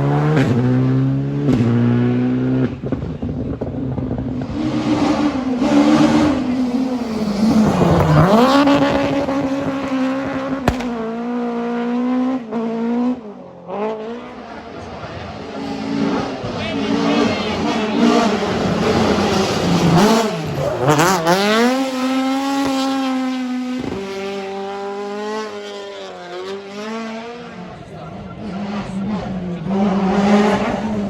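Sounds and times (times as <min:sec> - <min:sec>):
rally car engine at full throttle: 0:00.0 - 0:31.0
sharp crack: 0:10.6 - 0:11.4.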